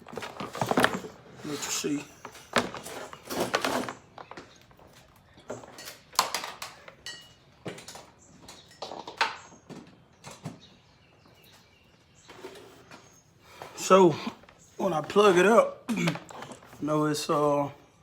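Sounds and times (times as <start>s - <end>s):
laptop and charger cable handled: 0.0s - 5.6s.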